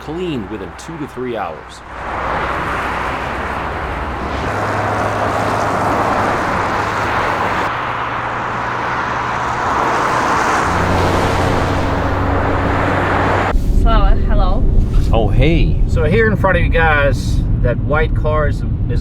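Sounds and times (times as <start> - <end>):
tyre and road noise: 0.0 - 16.3
low engine hum: 0.0 - 19.0.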